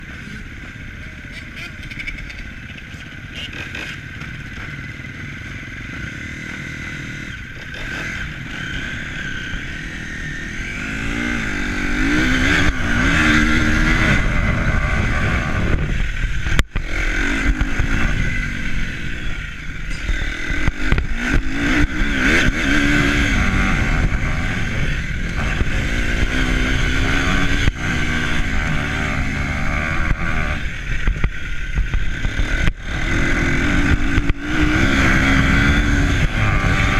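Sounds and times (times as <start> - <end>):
engine revving: 1.3 - 36.9
wind on microphone: 10.4 - 36.9.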